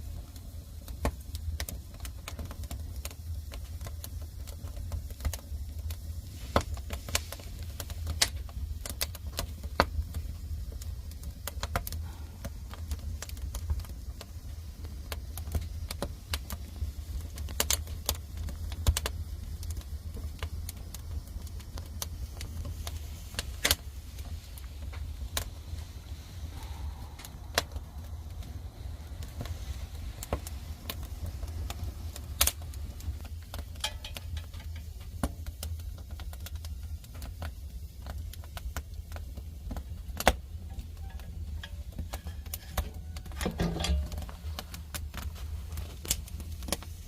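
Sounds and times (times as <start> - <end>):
firewood crackling: 0.0 - 47.0
steady low rumble: 19.8 - 35.9, 38.5 - 47.0.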